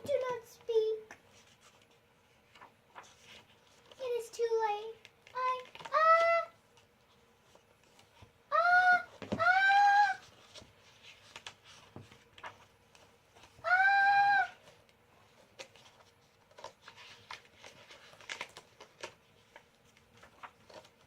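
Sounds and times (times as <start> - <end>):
faint clicks and rustles: 0.0 - 8.4, 10.2 - 13.6, 14.6 - 21.0
child's long high aah: 8.5 - 10.2, 13.6 - 14.6.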